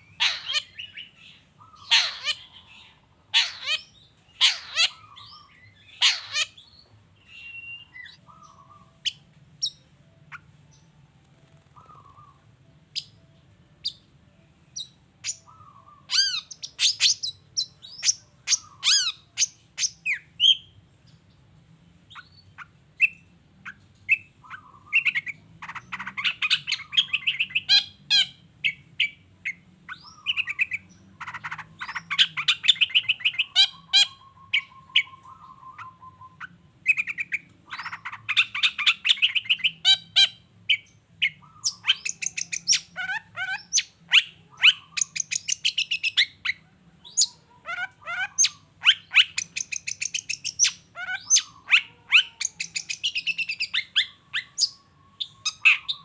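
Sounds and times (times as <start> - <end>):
bird trill: 0.0 - 11.0, 11.6 - 20.8, 22.1 - 56.0
bird singing varied song: 0.0 - 56.0
harsh bird chattering: 0.1 - 6.7, 15.2 - 20.6, 22.2 - 29.2, 29.9 - 35.2, 36.4 - 56.0.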